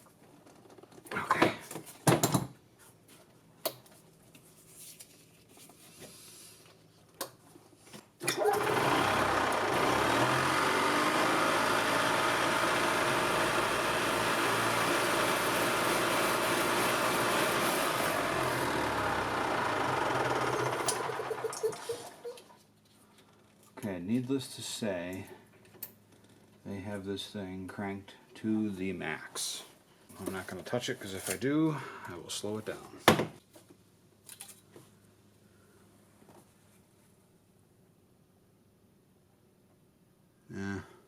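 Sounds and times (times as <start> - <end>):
golf cart engine running: 8.3 - 22.2.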